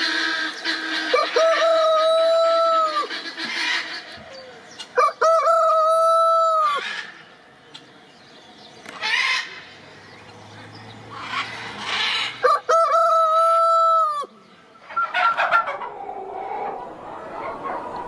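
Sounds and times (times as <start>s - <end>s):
rooster crowing: 12.2s - 14.3s
chicken clucking: 12.4s - 18.0s.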